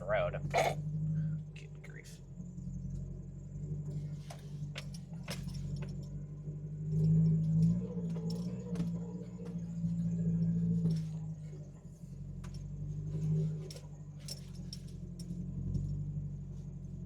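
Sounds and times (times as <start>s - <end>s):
car engine droning: 0.0s - 17.0s
light clicks and rattles: 12.4s - 16.2s.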